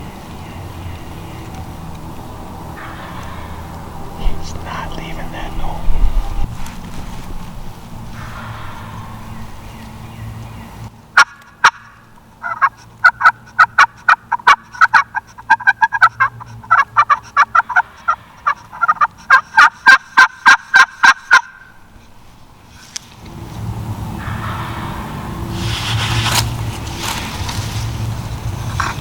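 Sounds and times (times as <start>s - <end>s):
turkey call yelps: 11.2s - 21.8s.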